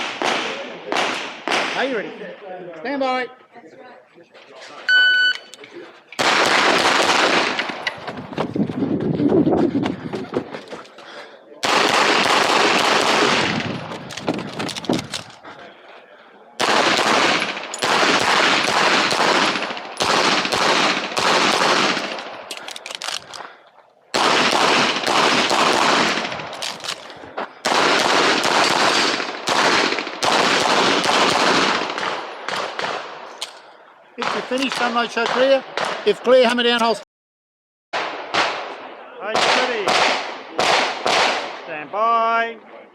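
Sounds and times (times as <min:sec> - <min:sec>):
pistol shots: 0:00.0 - 0:02.0, 0:06.2 - 0:07.9, 0:11.6 - 0:15.3, 0:16.6 - 0:23.4, 0:24.1 - 0:33.3, 0:34.2 - 0:36.0, 0:38.0 - 0:41.6.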